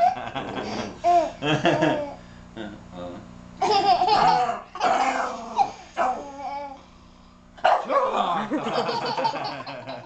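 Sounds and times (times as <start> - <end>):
child making fake snoring noises: 4.2 - 6.6.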